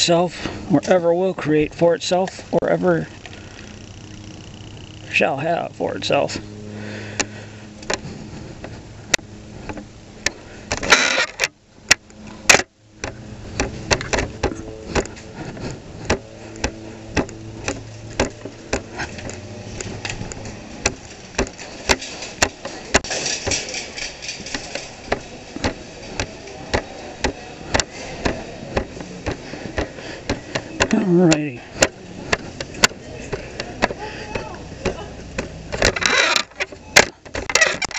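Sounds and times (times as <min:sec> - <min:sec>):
scooter engine running: 0:02.2 - 0:37.9
footsteps walking: 0:13.0 - 0:35.9.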